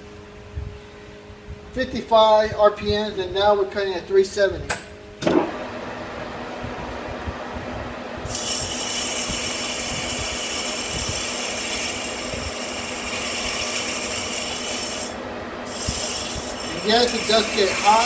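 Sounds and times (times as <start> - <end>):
metal lathe running: 8.3 - 18.0.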